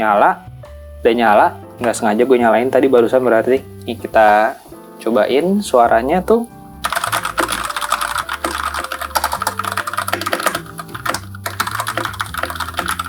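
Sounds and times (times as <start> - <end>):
mechanical keyboard typing: 6.8 - 13.0.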